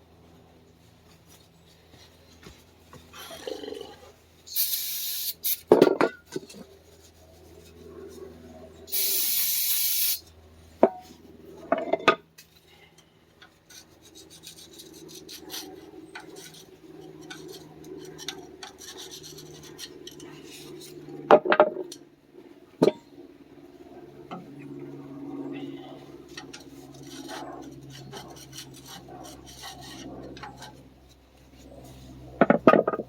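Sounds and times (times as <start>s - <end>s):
air hiss: 4.5s - 5.6s, 8.9s - 10.2s.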